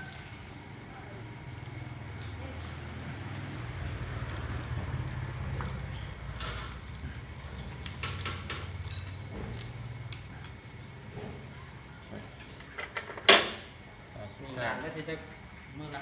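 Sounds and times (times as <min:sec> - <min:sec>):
small metal parts rattling: 0:00.0 - 0:11.1
steady low hum: 0:00.0 - 0:12.8.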